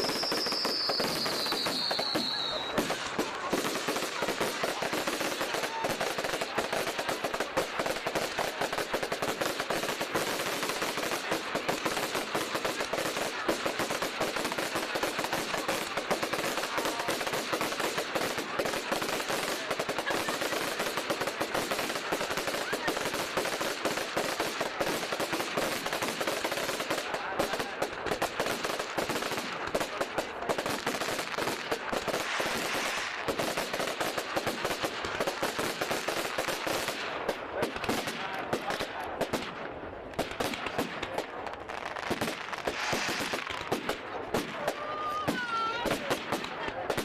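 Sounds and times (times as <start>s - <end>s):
falling firework whistle: 0.0s - 3.0s
fireworks crackling bangs: 0.0s - 47.0s.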